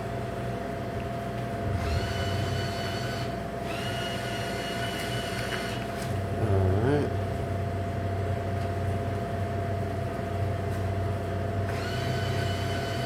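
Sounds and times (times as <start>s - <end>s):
vending machine electrical hum: 0.0s - 13.0s
bill acceptor high whine: 11.6s - 13.0s.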